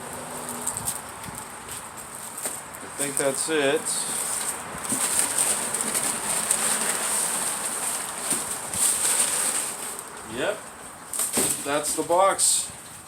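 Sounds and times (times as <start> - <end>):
cardboard box rustling: 4.0 - 10.1.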